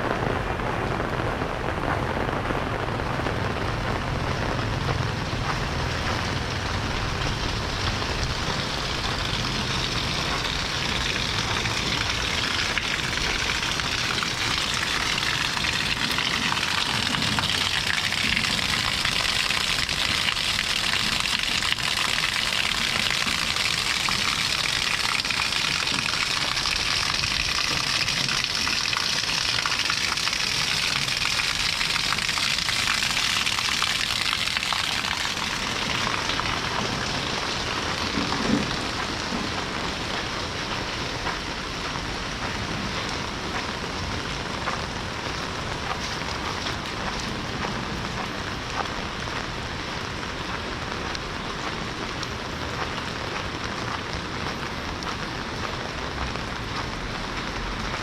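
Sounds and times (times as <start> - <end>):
low rumble: 0.0 - 17.5
steady rain falling: 0.0 - 58.0.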